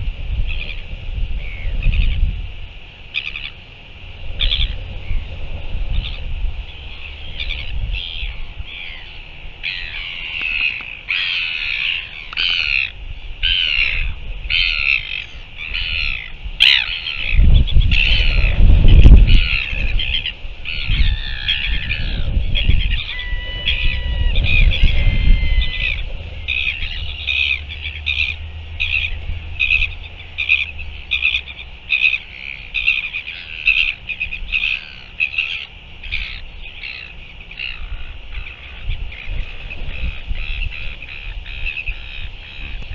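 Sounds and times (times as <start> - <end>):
gulls calling: 0.0 - 42.9
wind rumbling on microphone: 0.0 - 42.9.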